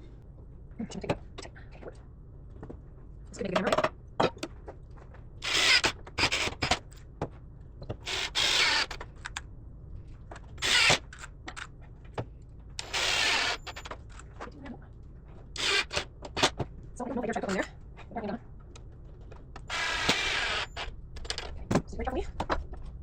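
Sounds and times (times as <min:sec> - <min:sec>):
power tool bursts: 0:05.4 - 0:06.7, 0:08.1 - 0:09.0, 0:10.6 - 0:11.1, 0:12.8 - 0:13.8, 0:15.6 - 0:16.5, 0:19.7 - 0:20.9.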